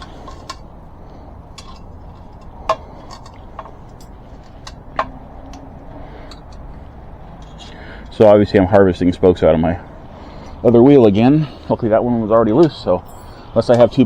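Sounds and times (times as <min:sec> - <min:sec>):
metallic clicks of parts and tools: 0:00.0 - 0:00.7, 0:01.5 - 0:05.6.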